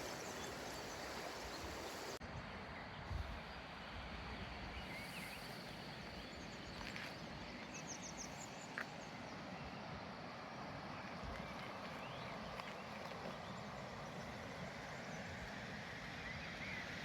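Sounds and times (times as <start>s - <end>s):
running water rushing: 0.0s - 2.2s.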